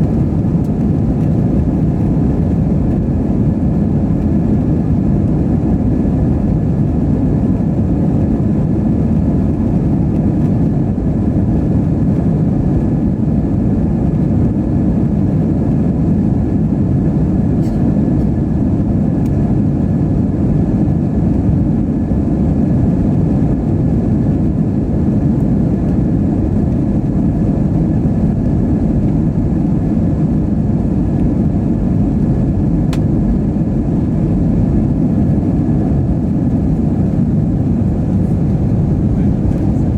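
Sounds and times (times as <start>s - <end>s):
aircraft cabin engine rumble: 0.0s - 39.9s
faint steady whine: 0.0s - 39.9s.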